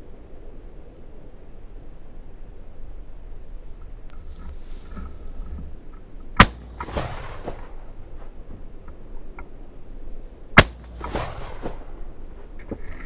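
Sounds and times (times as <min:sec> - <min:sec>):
shotgun shots: 0:06.4 - 0:08.0, 0:10.6 - 0:12.2.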